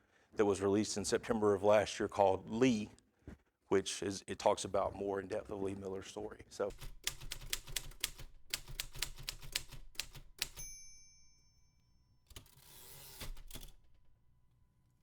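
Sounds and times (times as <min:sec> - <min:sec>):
typewriter carriage return: 0:06.7 - 0:10.8, 0:12.3 - 0:14.1
typewriter keystrokes: 0:06.7 - 0:10.8, 0:12.3 - 0:14.0
typewriter bell ding: 0:10.4 - 0:13.8.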